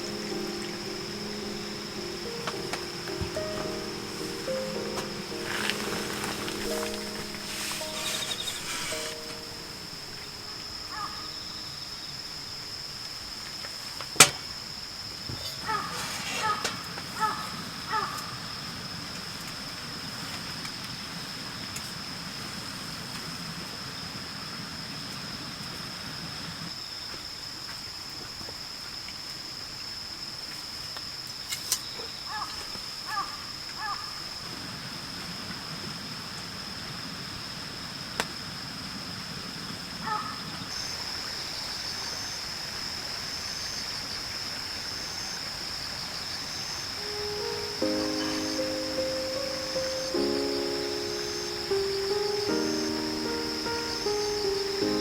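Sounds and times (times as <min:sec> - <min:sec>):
bird calls: 0:00.0 - 0:11.8
high-pitched insect buzz: 0:00.0 - 0:11.8
pulsing insect chirp: 0:00.0 - 0:19.0, 0:31.4 - 0:55.0.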